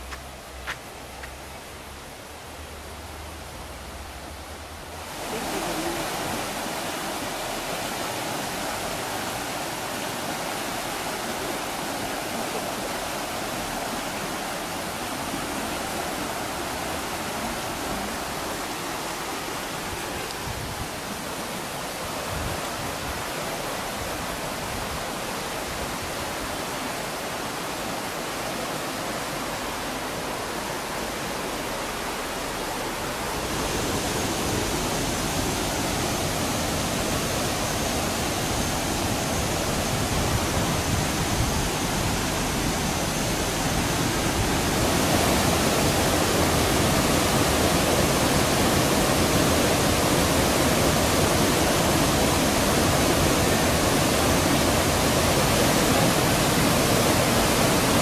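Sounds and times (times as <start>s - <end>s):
mountain stream rushing over rapids: 0.0s - 58.0s.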